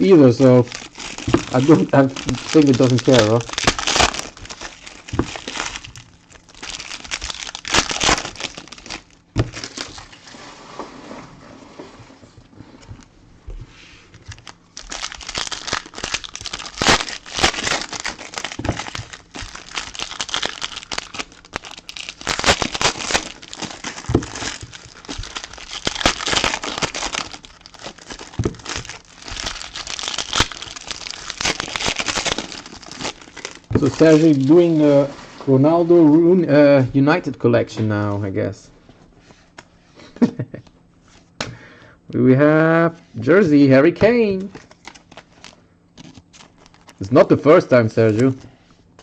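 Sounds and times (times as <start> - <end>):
card wrappers crinkling and tearing: 0.0 - 10.2, 14.2 - 34.8, 44.2 - 48.4.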